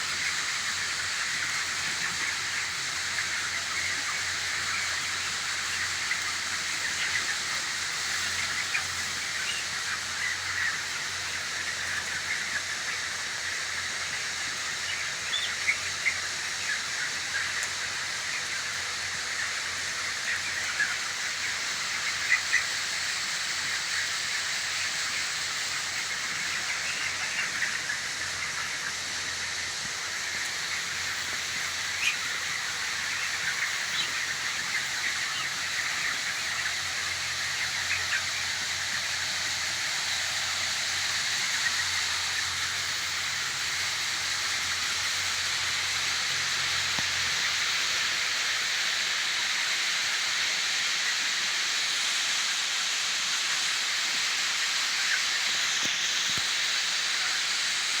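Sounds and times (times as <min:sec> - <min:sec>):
chickens chirping and peeping: 0:00.0 - 0:58.0
sharper louder chicken sounds: 0:00.0 - 0:58.0
steady hiss: 0:00.0 - 0:58.0.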